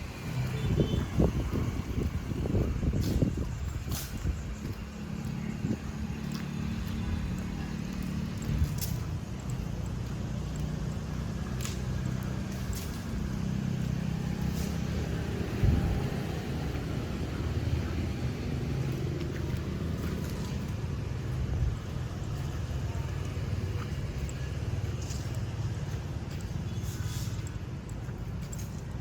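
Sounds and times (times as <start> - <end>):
vehicle engines humming: 0.0 - 29.0.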